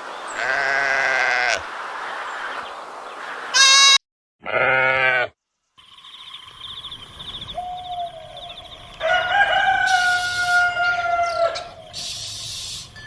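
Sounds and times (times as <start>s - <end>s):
sheep bleating: 0.4s - 1.6s, 3.5s - 5.4s.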